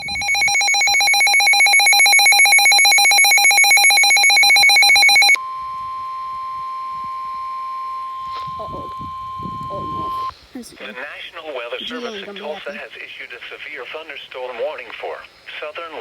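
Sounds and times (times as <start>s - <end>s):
pulsing electronic alarm: 0.0s - 10.3s
steady warning alarm tone: 0.0s - 10.3s.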